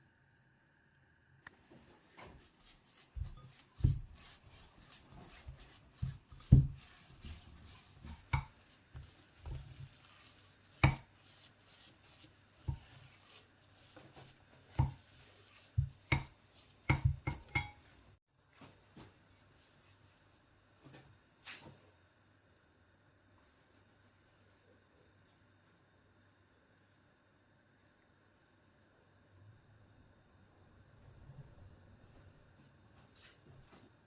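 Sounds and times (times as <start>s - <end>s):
kitchen utensils and dishes knocking: 16.9s - 17.8s.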